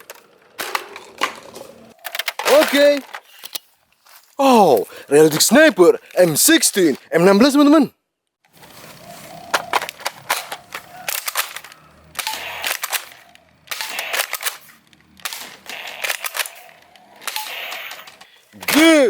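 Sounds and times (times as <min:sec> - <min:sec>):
toy rifle firing bursts: 0:10.0 - 0:18.9.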